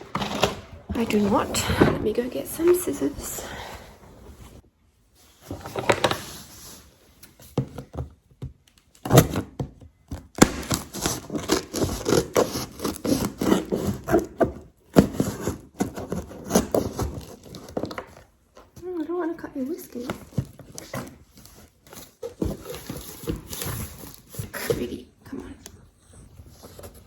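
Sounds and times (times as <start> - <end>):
cardboard scraping and rustling: 0.0 - 4.6, 5.2 - 8.0, 10.6 - 18.8, 20.0 - 25.0
scissors cutting packing tape: 10.4 - 14.3.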